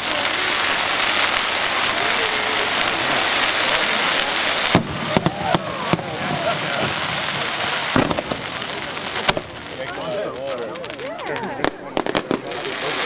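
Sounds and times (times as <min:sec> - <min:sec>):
firework shells bursting: 0:00.0 - 0:13.0
fireworks crackling hiss: 0:00.0 - 0:13.0.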